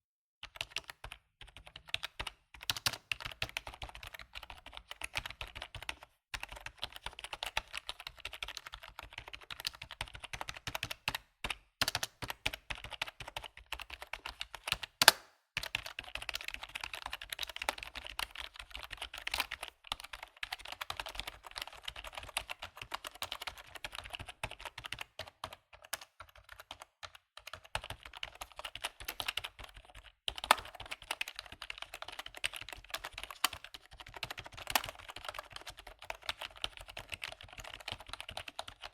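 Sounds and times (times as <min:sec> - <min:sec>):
computer keyboard typing: 0:00.4 - 0:38.9.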